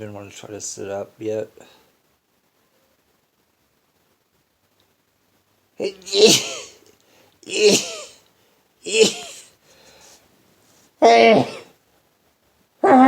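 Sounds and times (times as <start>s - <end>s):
man sneezing: 5.8s - 6.8s, 7.4s - 8.2s, 8.8s - 9.6s, 11.0s - 11.8s
faint breath: 7.0s - 7.4s, 9.5s - 10.8s.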